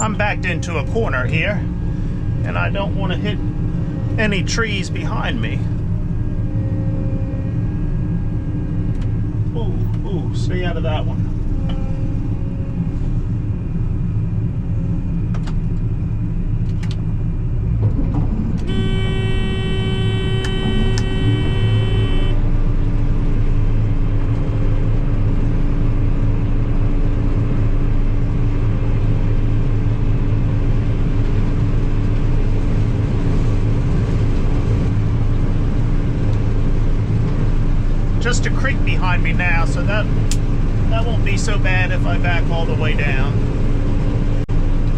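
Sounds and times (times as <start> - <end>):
steady high tone: 0.0 - 14.1, 18.7 - 22.5
combine harvester engine running: 0.0 - 44.9.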